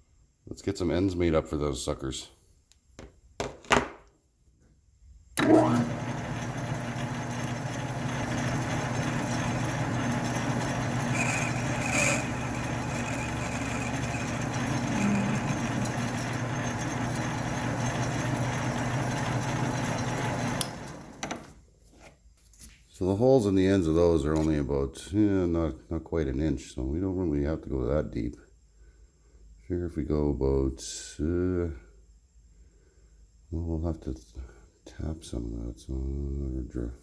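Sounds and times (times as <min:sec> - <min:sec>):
electric motor humming: 0:05.4 - 0:21.1.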